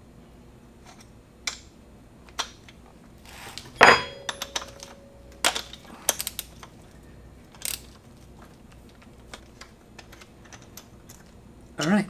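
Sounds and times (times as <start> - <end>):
hand tools clicking on metal: 3.8 - 6.7.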